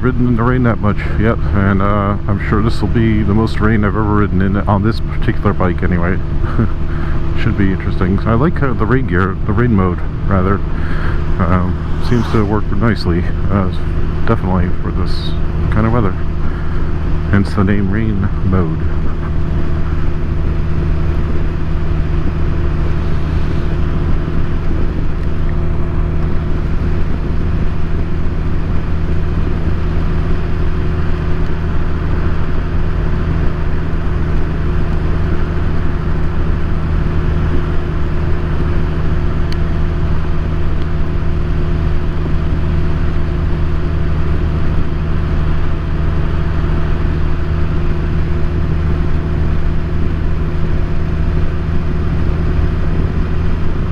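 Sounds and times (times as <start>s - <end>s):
tyres on wet road: 5.0s - 17.4s, 18.3s - 53.9s
wind noise: 9.9s - 15.7s, 19.0s - 33.7s.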